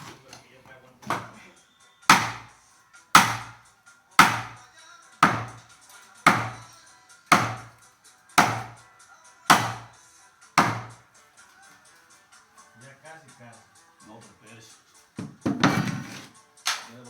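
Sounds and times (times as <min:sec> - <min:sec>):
hammer striking wood: 0:01.0 - 0:01.4, 0:02.1 - 0:02.6, 0:03.2 - 0:04.6, 0:05.2 - 0:06.7, 0:07.3 - 0:07.8, 0:08.4 - 0:08.9, 0:09.5 - 0:10.0, 0:10.6 - 0:11.0.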